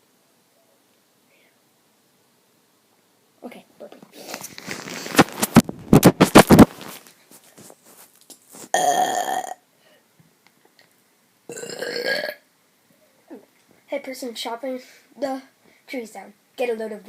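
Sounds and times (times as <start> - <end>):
person burping: 8.7 - 9.6, 11.5 - 12.4.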